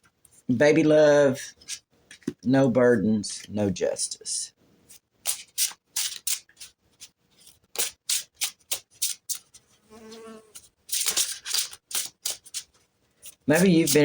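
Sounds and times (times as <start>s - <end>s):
cards rubbing and flicking: 4.9s - 14.0s.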